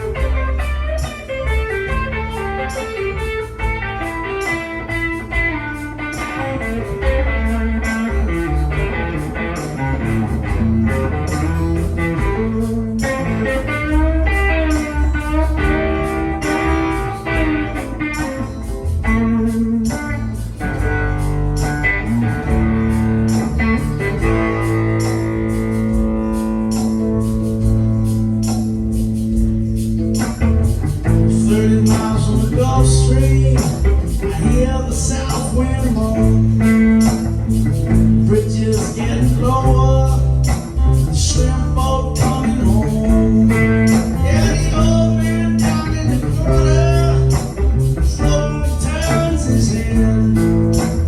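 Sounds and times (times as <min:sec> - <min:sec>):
bass and drums: 0:00.0 - 0:51.0
guitar: 0:00.0 - 0:51.0.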